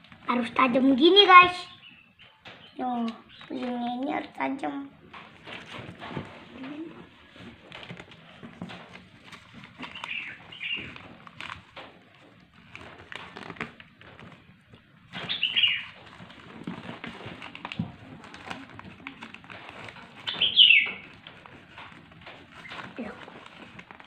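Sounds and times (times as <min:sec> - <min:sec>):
paper creasing and rustling: 0:02.5 - 0:24.0.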